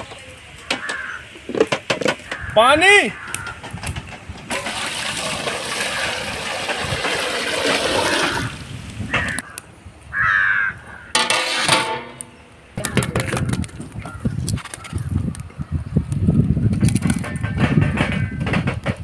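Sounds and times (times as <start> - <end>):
crow cawing: 0.6 - 1.3, 2.2 - 3.6, 9.1 - 11.2
water pouring into a pot: 4.5 - 8.7.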